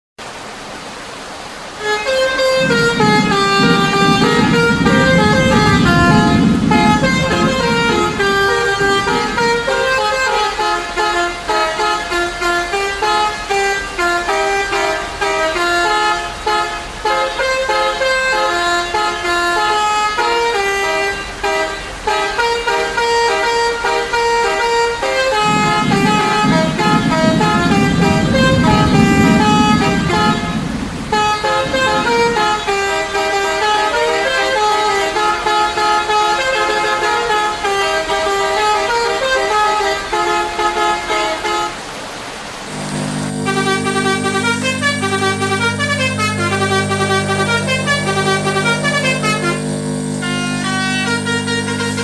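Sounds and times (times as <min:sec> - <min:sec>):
musical air horn melody: 0:01.8 - 0:41.8, 0:42.6 - 0:52.0
low rumble: 0:02.1 - 0:10.2, 0:25.4 - 0:32.8, 0:42.7 - 0:52.0.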